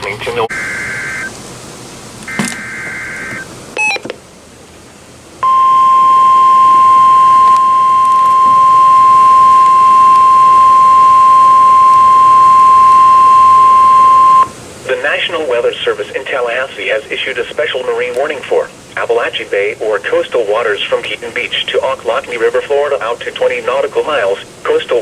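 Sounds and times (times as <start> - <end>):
steady warning alarm tone: 0.0 - 1.4, 2.3 - 4.0, 5.4 - 14.6.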